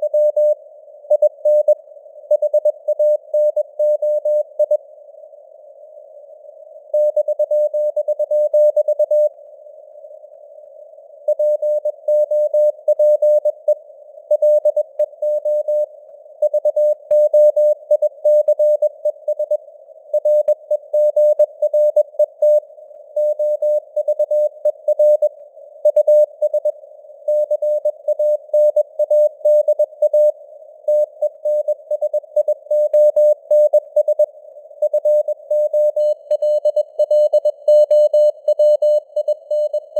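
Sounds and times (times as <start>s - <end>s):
morse code tone: 34.9s - 39.9s.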